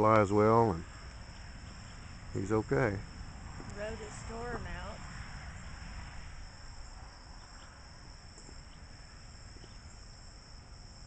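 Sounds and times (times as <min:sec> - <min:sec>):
crickets droning: 0:00.0 - 0:11.0
low outdoor rumble: 0:00.0 - 0:11.0.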